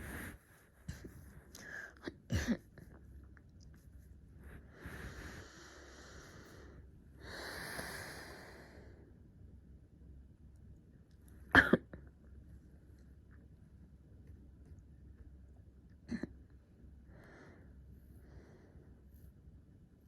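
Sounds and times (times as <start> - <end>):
person breathing: 0.0 - 2.0, 4.4 - 9.1, 17.1 - 19.0
person clearing throat: 11.6 - 11.9.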